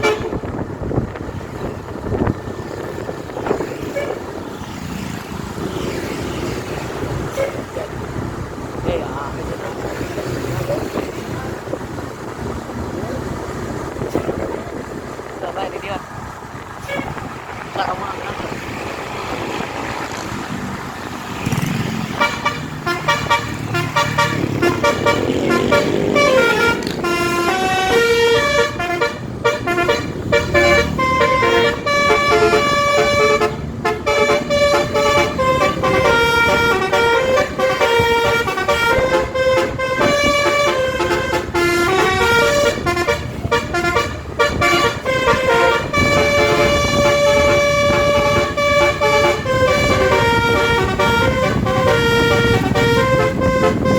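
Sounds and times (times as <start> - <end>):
bus air horn playing tune: 0.0 - 0.6, 16.8 - 17.2, 21.5 - 53.9
bus engine running: 0.0 - 53.9.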